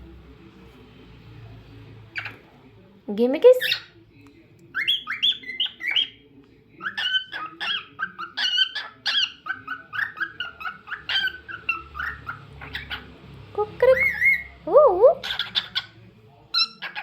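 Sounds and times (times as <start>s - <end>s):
cockatiel chirping and whistling: 4.8s - 6.2s, 6.8s - 13.0s.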